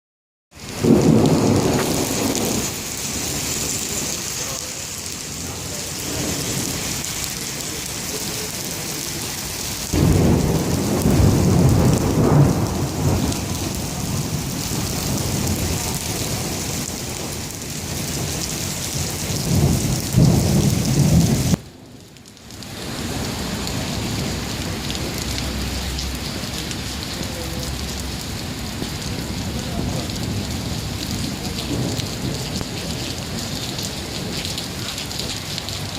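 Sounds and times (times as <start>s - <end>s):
steady rain: 0.5s - 35.9s
low rolls of thunder: 0.7s - 4.6s, 9.9s - 21.6s, 28.8s - 35.9s.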